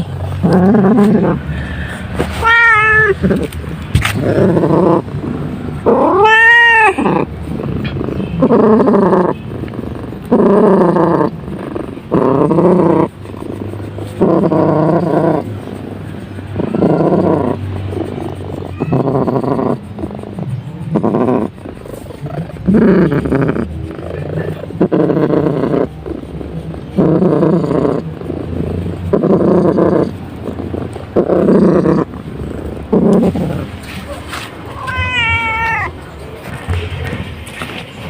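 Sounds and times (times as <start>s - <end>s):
cat purring loudly: 0.0s - 38.0s
cat meowing: 2.3s - 3.5s, 5.9s - 7.3s, 18.6s - 19.6s, 34.7s - 36.0s.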